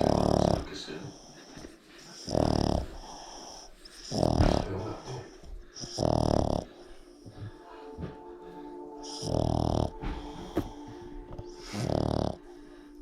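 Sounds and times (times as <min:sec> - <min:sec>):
dog snoring: 0:00.0 - 0:13.0.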